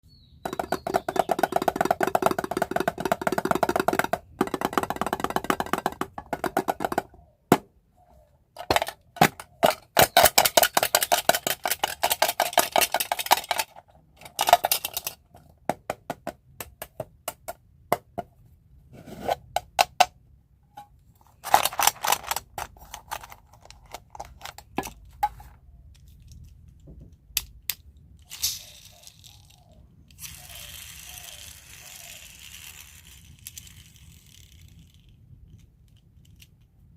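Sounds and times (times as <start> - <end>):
hard candies clattering: 8.6 - 15.4, 21.3 - 26.4.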